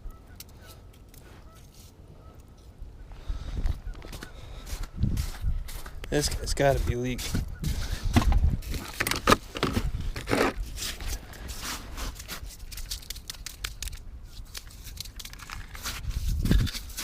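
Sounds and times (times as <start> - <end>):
scraping and crinkling handling noise: 4.0 - 17.0.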